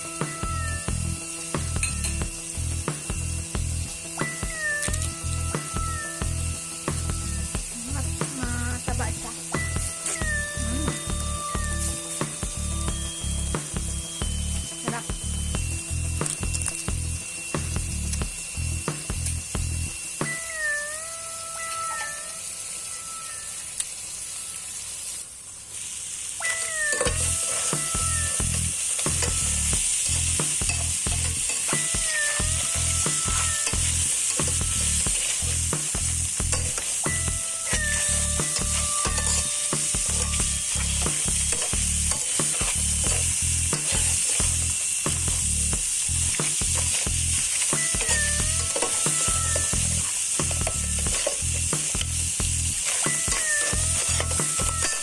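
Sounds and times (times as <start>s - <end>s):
music with pulsing beat: 0.0s - 20.5s, 27.1s - 55.0s
crabs sizzling in a pan: 0.0s - 55.0s.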